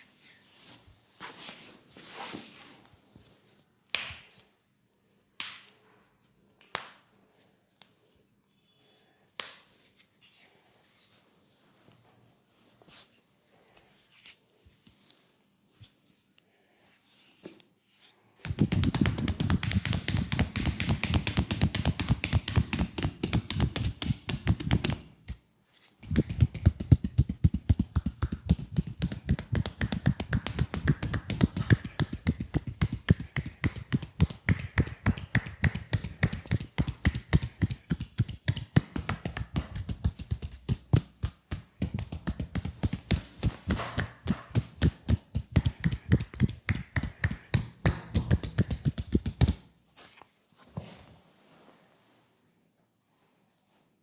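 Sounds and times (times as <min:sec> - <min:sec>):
rapid percussive massage tapping: 0:18.4 - 0:25.4, 0:26.0 - 0:49.6.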